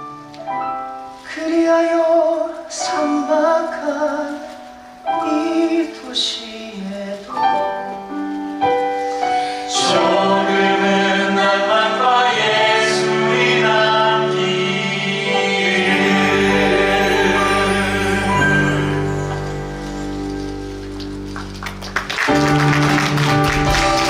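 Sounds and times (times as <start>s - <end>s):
cast singing in harmony: 9.7s - 20.1s.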